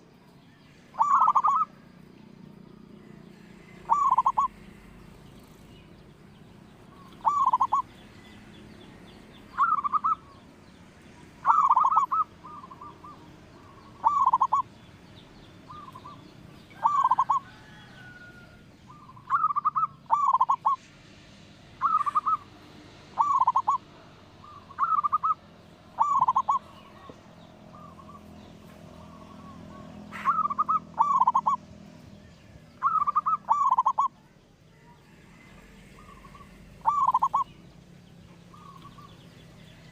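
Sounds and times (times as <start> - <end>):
dove cooing: 1.0 - 1.9, 3.1 - 8.5, 9.3 - 10.4, 11.4 - 14.8, 15.6 - 20.8, 21.8 - 22.5, 23.2 - 32.1, 32.8 - 34.2, 35.3 - 37.6.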